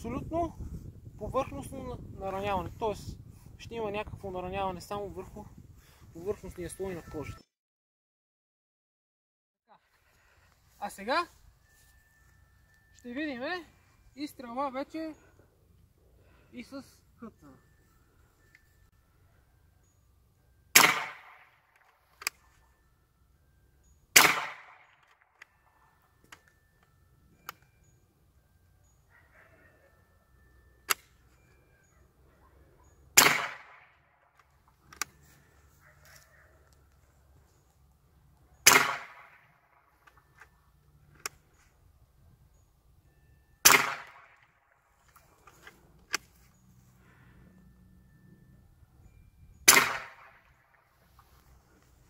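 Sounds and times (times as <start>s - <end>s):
air rifle shots: 20.8s - 21.6s, 24.2s - 24.8s, 33.2s - 33.9s, 38.6s - 39.5s, 43.6s - 44.4s, 49.7s - 50.4s.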